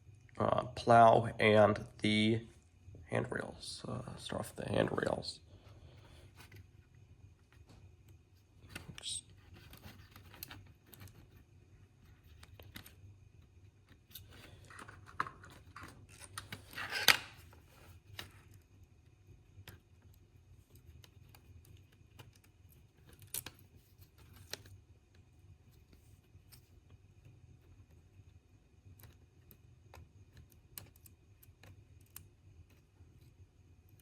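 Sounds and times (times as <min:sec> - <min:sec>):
plastic parts clicking and scraping: 0:08.6 - 0:11.4, 0:13.9 - 0:18.6, 0:19.6 - 0:24.8.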